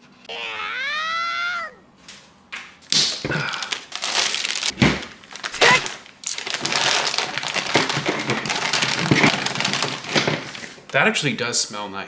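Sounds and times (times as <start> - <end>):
plastic packaging crinkling: 2.8 - 11.3.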